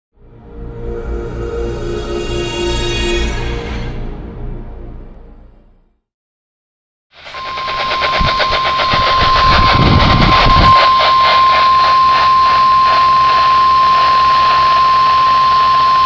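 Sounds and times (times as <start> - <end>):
radio static hiss: 7.2 - 15.2
steady warning alarm tone: 7.2 - 16.0.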